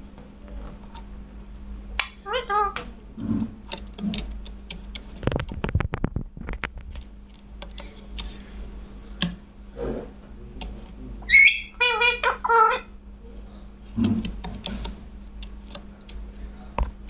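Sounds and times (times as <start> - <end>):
parakeet clicking: 3.6 - 5.6, 7.3 - 8.4, 9.2 - 9.4, 14.0 - 16.4
parakeet sharp call: 11.3 - 12.9.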